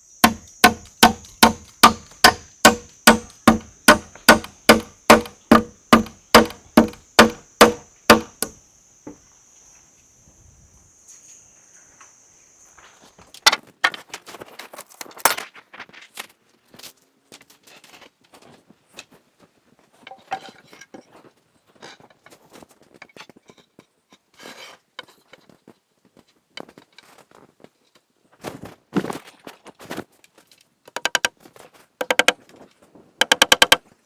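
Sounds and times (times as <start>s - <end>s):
wood and tools clattering: 0.2s - 8.5s.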